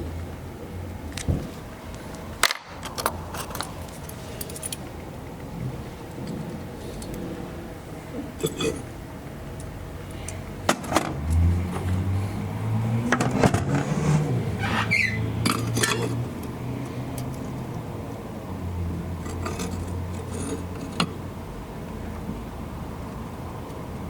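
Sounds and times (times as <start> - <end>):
metal tools clinking and scraping: 3.3 - 4.8, 8.4 - 8.9, 14.6 - 16.4, 19.2 - 21.2.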